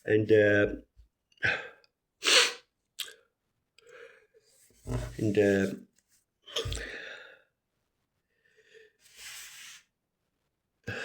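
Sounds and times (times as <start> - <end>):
man breathing: 3.8 - 4.4, 6.7 - 7.5, 8.3 - 9.0.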